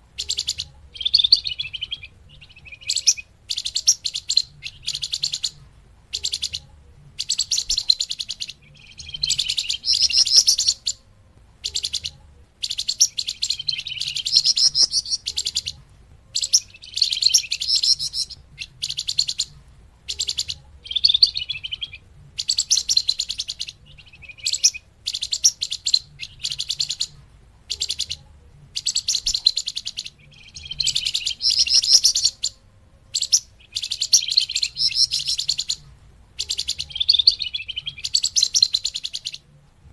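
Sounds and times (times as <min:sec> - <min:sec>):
songbird chattering trills: 0:00.0 - 0:39.5.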